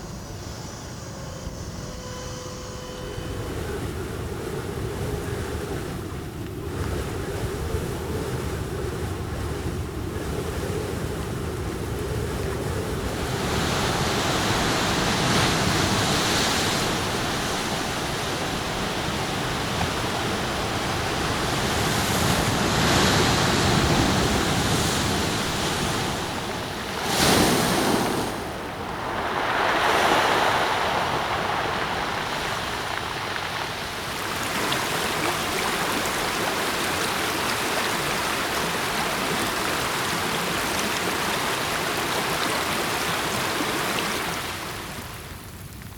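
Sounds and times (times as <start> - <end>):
wind: 0.0 - 45.9
ocean waves breaking: 3.1 - 45.2.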